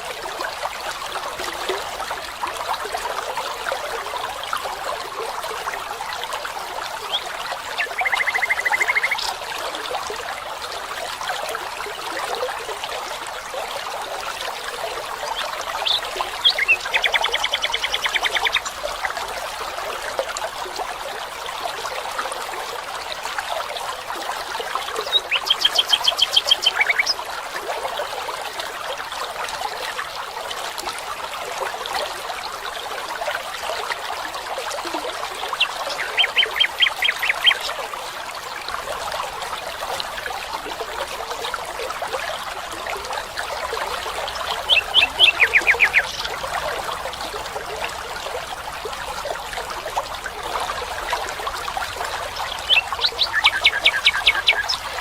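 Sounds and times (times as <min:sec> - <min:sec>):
stream rushing: 0:00.0 - 0:55.0.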